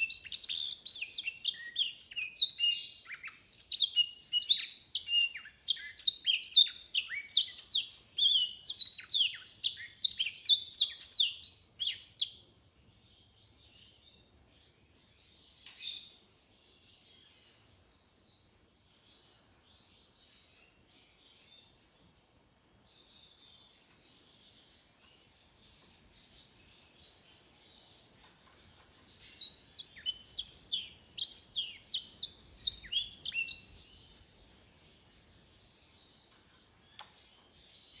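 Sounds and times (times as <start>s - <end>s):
bird song rapid chirps: 0.0s - 38.0s
bird soft twittering: 28.8s - 34.2s.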